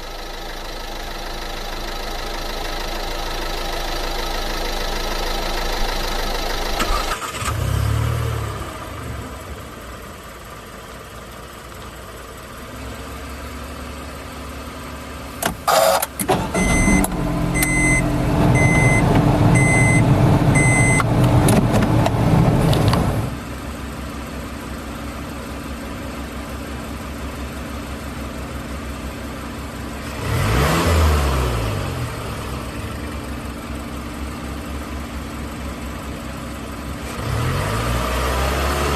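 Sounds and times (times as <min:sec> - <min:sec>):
sharp knocks of engine starting: 0:06.6 - 0:07.8, 0:15.4 - 0:18.0
reversing alarm beeps: 0:16.6 - 0:21.1.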